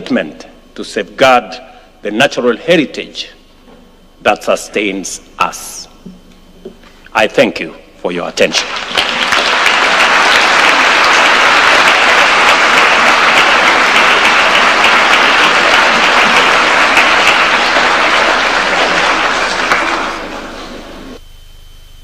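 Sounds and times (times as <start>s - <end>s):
large audience applauding: 8.4s - 21.2s.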